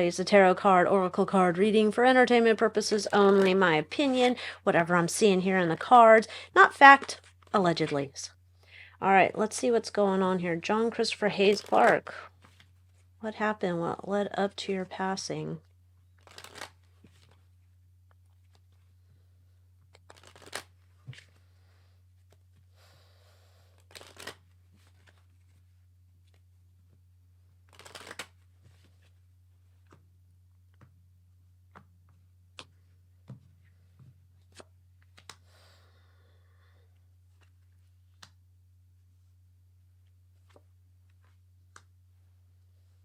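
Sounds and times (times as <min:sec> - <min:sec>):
low electrical hum: 0:00.0 - 0:43.0
cards being shuffled: 0:03.0 - 0:03.6, 0:11.4 - 0:13.1, 0:16.2 - 0:18.9, 0:19.8 - 0:21.4, 0:22.1 - 0:22.7, 0:23.7 - 0:26.4, 0:27.6 - 0:30.0, 0:31.7 - 0:31.9, 0:32.5 - 0:35.4, 0:37.3 - 0:38.4
cards ticking and tapping: 0:11.5 - 0:12.6, 0:16.2 - 0:17.4, 0:19.8 - 0:21.4, 0:23.8 - 0:25.2, 0:27.7 - 0:28.9, 0:31.7 - 0:35.4.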